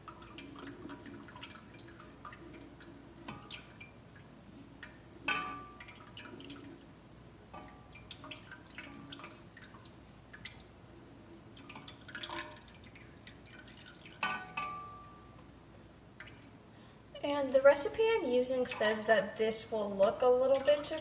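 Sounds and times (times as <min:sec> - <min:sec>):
spoon stirring liquid: 0:11.6 - 0:15.2
spoon knocking against pot: 0:14.2 - 0:15.0.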